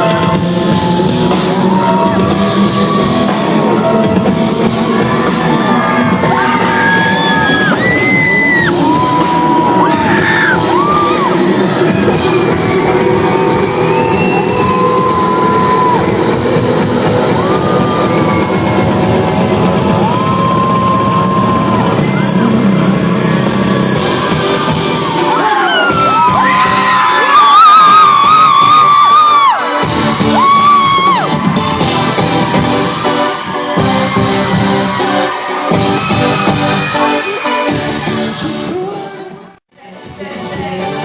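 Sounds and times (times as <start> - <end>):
amplified band music: 0.0 - 41.0
crowd screaming and cheering: 0.0 - 41.0.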